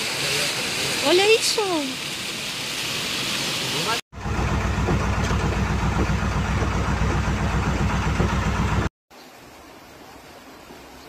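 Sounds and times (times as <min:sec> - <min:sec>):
engine humming: 0:04.2 - 0:08.9.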